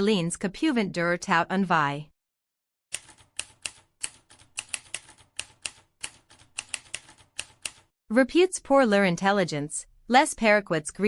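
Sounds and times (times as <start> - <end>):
typewriter keys clicking: 2.9 - 7.9.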